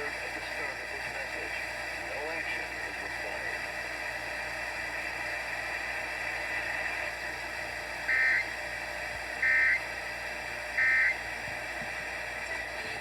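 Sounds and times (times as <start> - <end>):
radio hiss: 0.0 - 8.6
alert data tone bursts: 8.1 - 8.5, 9.4 - 9.8, 10.8 - 11.2.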